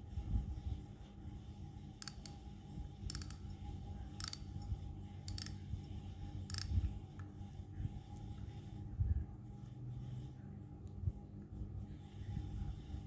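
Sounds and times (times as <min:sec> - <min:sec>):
spinning reel clicking: 0:02.0 - 0:02.4, 0:03.0 - 0:03.6, 0:04.2 - 0:04.6, 0:05.3 - 0:05.6, 0:06.5 - 0:06.8.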